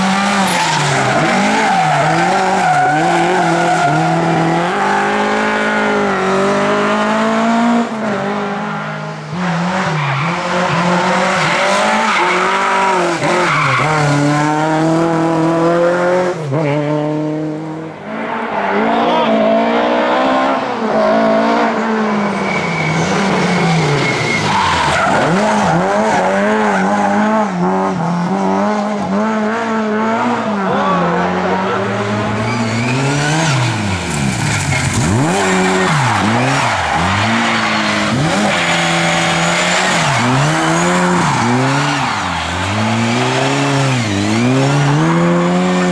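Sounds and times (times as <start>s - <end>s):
race car engines revving: 0.0s - 45.9s
tyres squealing: 0.1s - 5.5s.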